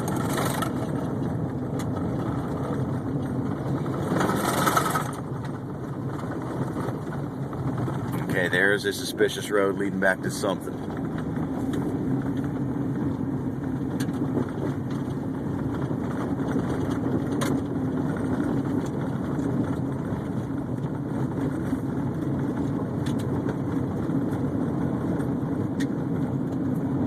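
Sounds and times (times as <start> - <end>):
car engine and road rumble: 0.0 - 27.0.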